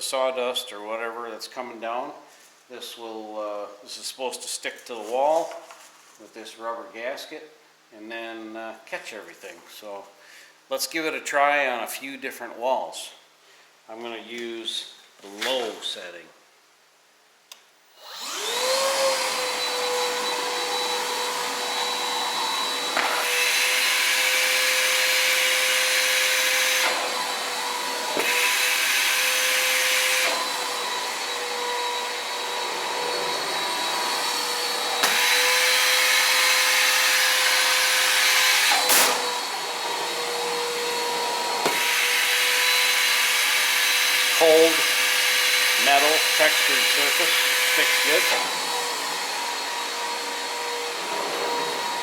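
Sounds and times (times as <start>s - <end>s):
vacuum motor whining: 18.0s - 52.0s.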